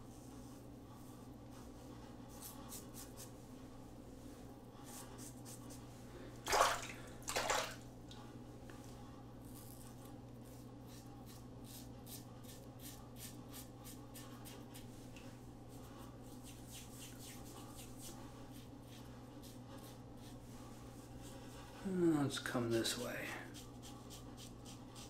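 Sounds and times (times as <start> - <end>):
water splashing: 6.4 - 7.8.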